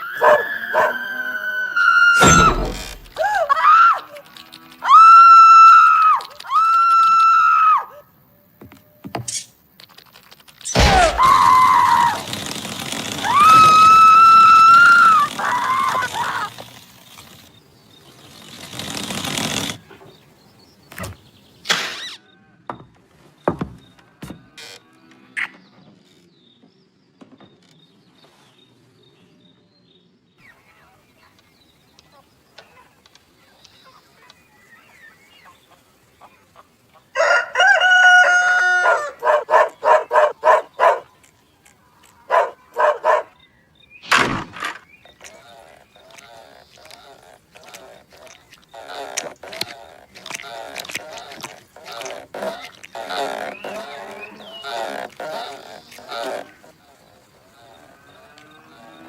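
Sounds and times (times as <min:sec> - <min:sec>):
sudden crash: 0:02.2 - 0:03.2, 0:44.0 - 0:44.8
small birds chirping: 0:05.5 - 0:24.5, 0:25.4 - 0:59.0.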